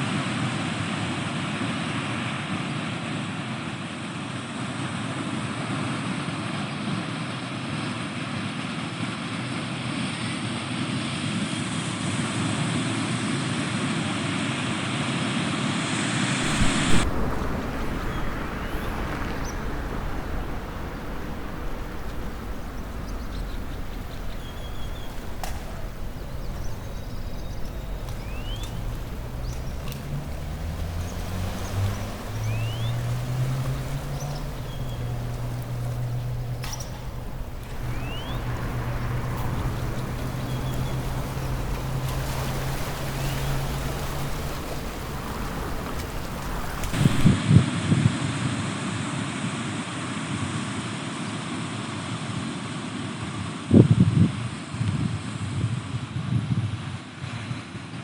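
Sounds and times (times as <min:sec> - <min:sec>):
surf washing: 0:16.4 - 0:47.4
wind rumble on microphone: 0:16.4 - 0:49.0, 0:53.2 - 0:58.0.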